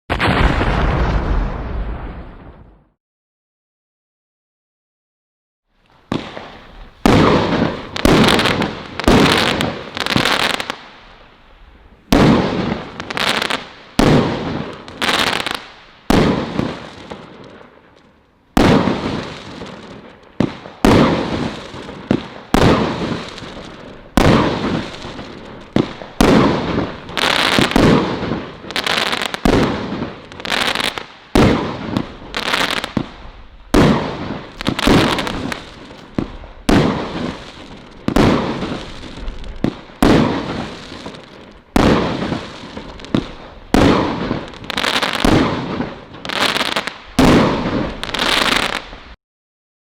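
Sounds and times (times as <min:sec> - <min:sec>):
crackling firework stars: 0:00.1 - 0:03.0, 0:05.8 - 0:49.2
firework cake shots launching: 0:20.5 - 0:30.0, 0:38.1 - 0:48.9.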